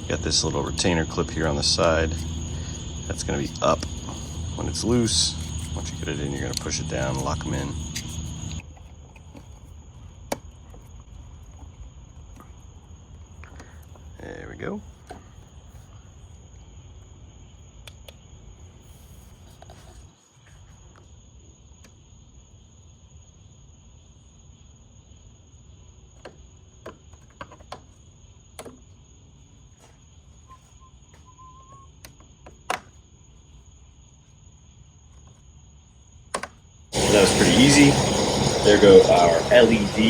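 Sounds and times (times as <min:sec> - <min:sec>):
steady low rumble: 0:37.0 - 0:40.0.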